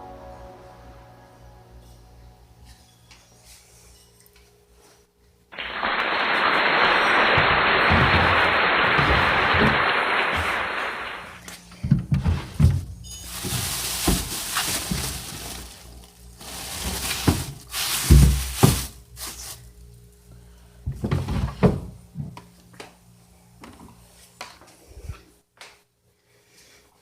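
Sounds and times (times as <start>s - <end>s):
faint background music: 0.0s - 5.5s
rushing noise: 5.6s - 11.4s
objects knocked and set down: 7.4s - 9.8s.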